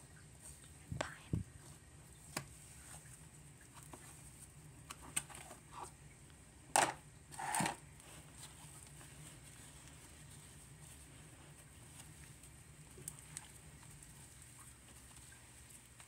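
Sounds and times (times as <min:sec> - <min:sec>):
slime squishes: 0:08.0 - 0:16.0.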